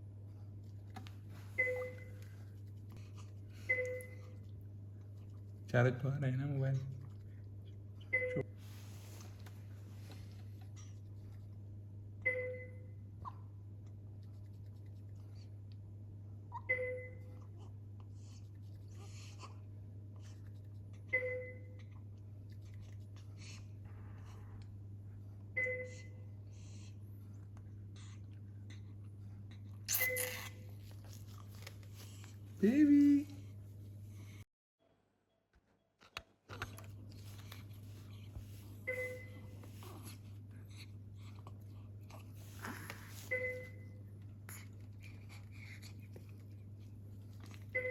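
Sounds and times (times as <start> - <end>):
low electrical hum: 0.0 - 47.9
hospital monitor beeping: 1.5 - 2.3, 3.6 - 4.4, 8.1 - 8.5, 12.2 - 13.0, 16.6 - 17.4, 21.1 - 21.8, 25.5 - 26.3, 38.8 - 39.7, 43.2 - 44.0, 47.7 - 47.9.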